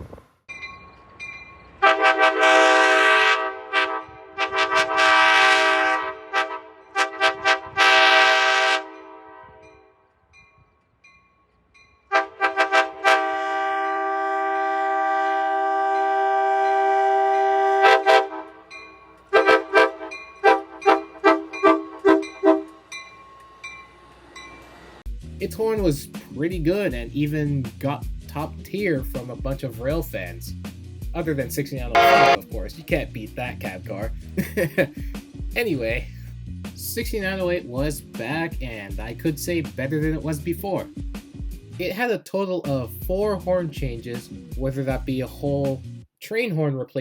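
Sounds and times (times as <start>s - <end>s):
multi-chime train horn blasts: 1.8s - 10.1s, 12.1s - 25.0s, 32.0s - 32.6s.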